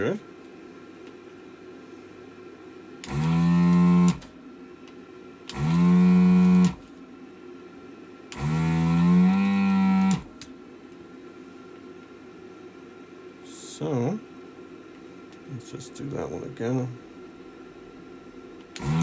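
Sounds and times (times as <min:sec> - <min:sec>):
desoldering vacuum pump running: 0:03.0 - 0:04.6, 0:05.3 - 0:07.1, 0:08.2 - 0:10.7, 0:13.4 - 0:19.0.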